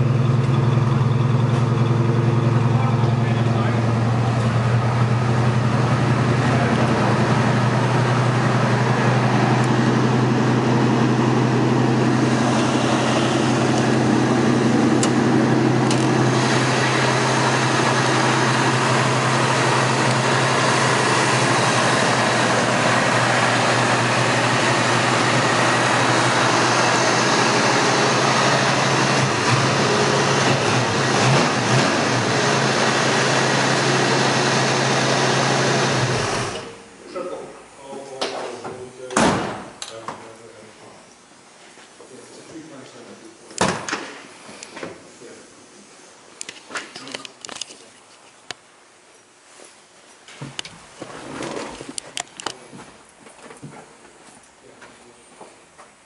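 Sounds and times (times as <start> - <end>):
car engine idling: 0.0 - 36.9.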